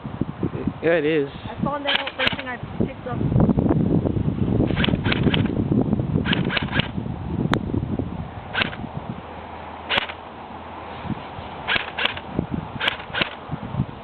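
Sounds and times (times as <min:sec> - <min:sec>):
airsoft gun shots: 0:01.9 - 0:02.5, 0:04.7 - 0:05.5, 0:06.2 - 0:06.9, 0:08.5 - 0:08.8, 0:09.9 - 0:10.2, 0:11.7 - 0:12.2, 0:12.8 - 0:13.4.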